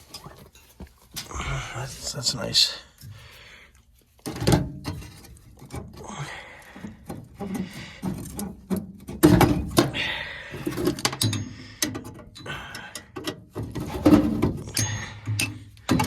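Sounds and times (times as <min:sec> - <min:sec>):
metal parts clicking and knocking: 0:06.9 - 0:16.0.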